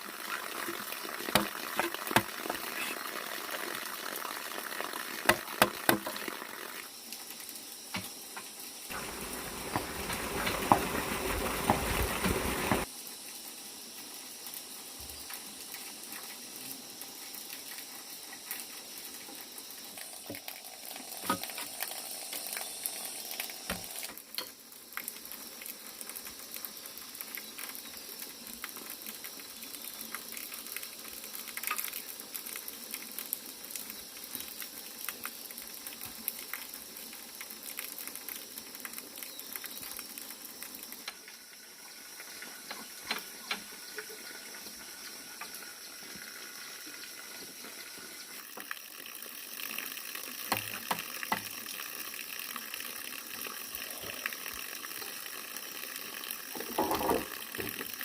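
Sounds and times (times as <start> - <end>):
water running and splashing: 0.0 - 58.0
small knocks: 56.6 - 57.9.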